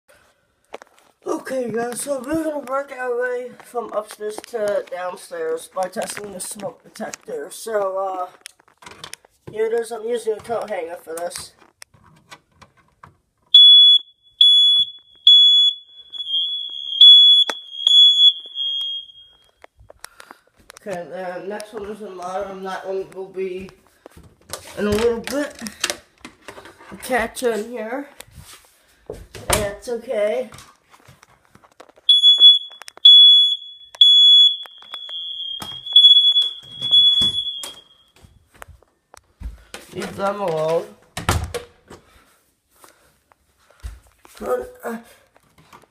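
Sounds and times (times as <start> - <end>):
smoke detector shrill beeping: 13.6 - 19.6, 32.1 - 38.2.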